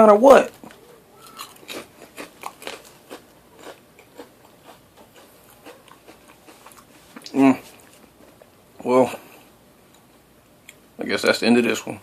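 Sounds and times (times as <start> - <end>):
chewing potato chips: 0.5 - 8.5.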